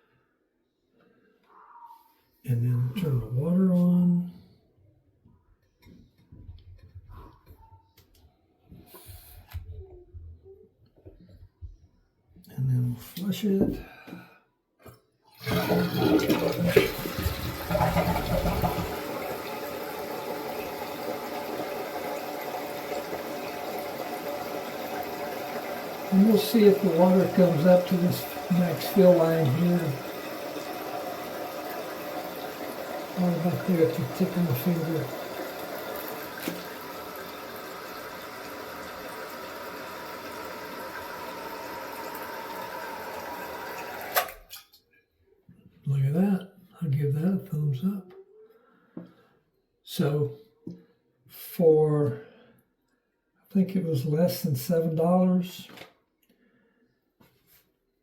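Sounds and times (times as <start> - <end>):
toilet flushing: 15.3 - 44.6.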